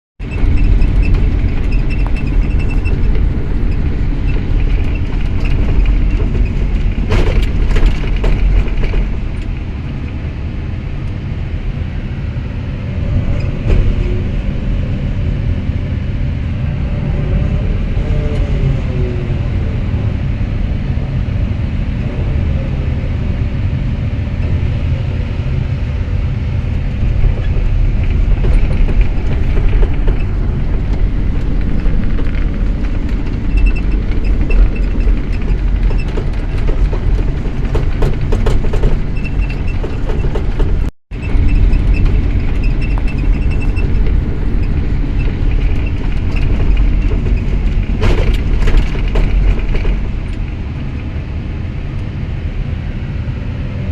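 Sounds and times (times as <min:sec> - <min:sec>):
excavator diesel engine rumble: 0:00.2 - 0:53.9
sharp knocks: 0:27.2 - 0:44.0.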